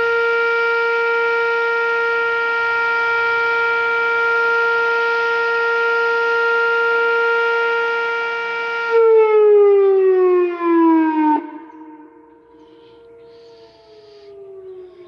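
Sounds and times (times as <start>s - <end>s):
outdoor warning siren: 0.0s - 15.0s.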